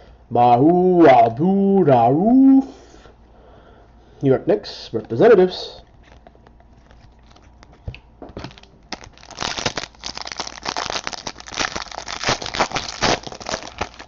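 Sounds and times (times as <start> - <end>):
foil wrapper crinkling: 5.8 - 14.0.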